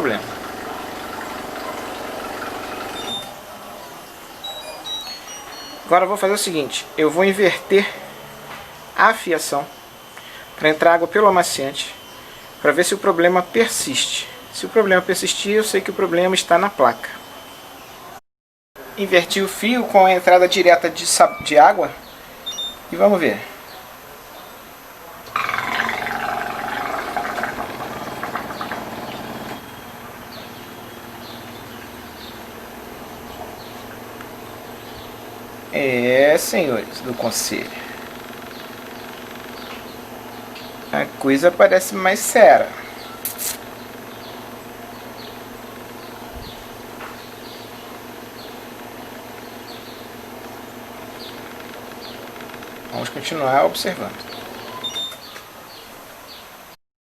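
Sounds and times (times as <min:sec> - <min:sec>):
water rushing into washing machine: 0:00.0 - 0:03.3, 0:25.3 - 0:29.6
solenoid valve buzzing: 0:00.0 - 0:03.4, 0:20.2 - 0:23.1, 0:25.3 - 0:41.0
short high chirps: 0:04.4 - 0:05.9.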